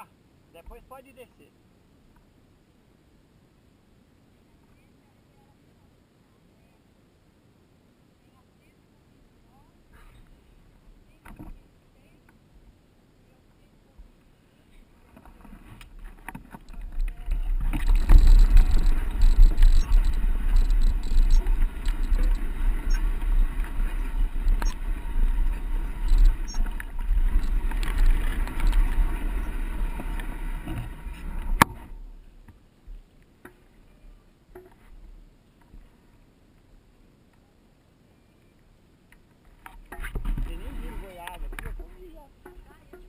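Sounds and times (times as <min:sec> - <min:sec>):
wind rumble on microphone: 0:14.9 - 0:33.0, 0:39.8 - 0:43.0
bike rattling and clicking: 0:15.8 - 0:32.0.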